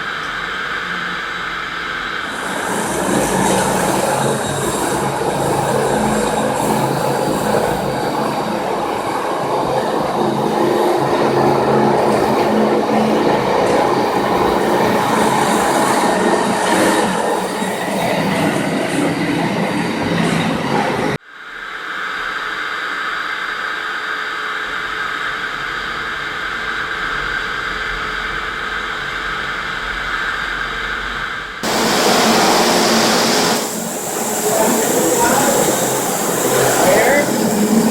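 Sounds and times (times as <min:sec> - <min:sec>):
concrete floor grinder grinding: 0:02.2 - 0:18.4, 0:31.6 - 0:37.9.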